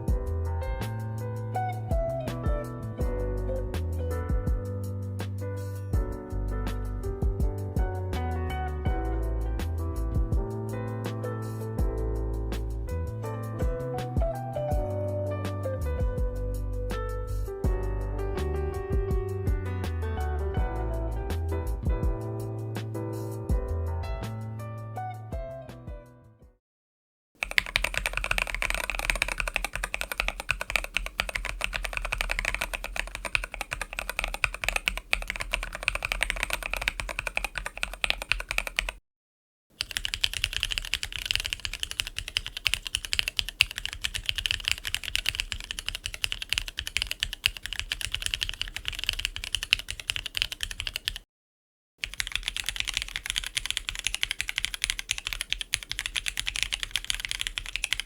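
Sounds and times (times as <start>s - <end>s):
mechanical keyboard typing: 27.4s - 39.0s, 39.8s - 51.2s, 52.0s - 58.0s.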